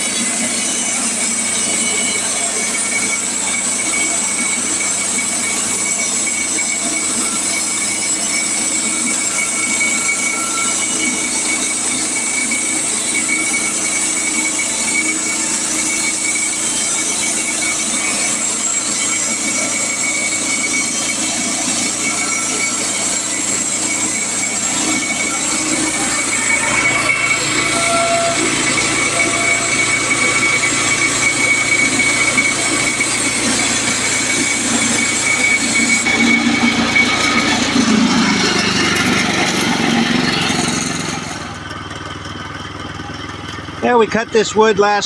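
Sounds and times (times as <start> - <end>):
band sawmill cutting log: 0.0 - 45.0.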